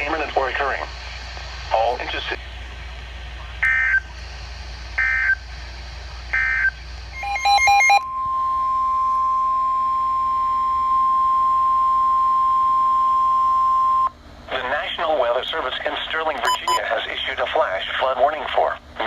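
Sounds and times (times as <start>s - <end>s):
steady warning alarm tone: 3.6s - 4.1s, 5.0s - 5.5s, 6.3s - 14.2s, 16.4s - 16.8s
digital data tone bursts: 6.4s - 12.2s, 16.4s - 16.8s
warbling chirp: 7.2s - 8.7s.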